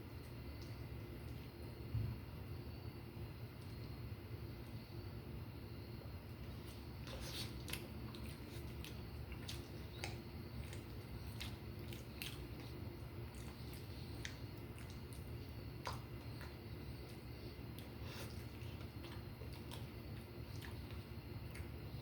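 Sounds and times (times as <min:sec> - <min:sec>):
wet chewing with mouth clicks: 0:06.2 - 0:22.0.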